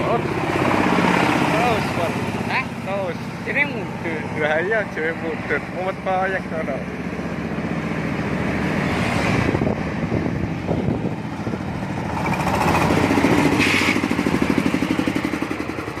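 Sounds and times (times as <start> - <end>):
engine chugging: 0.0 - 8.4, 10.3 - 16.0.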